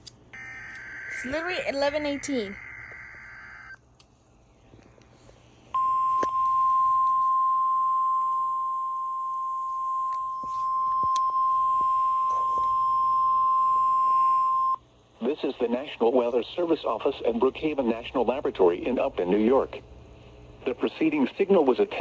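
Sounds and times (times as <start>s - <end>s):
steady warning alarm tone: 0.4s - 3.8s, 5.8s - 14.8s.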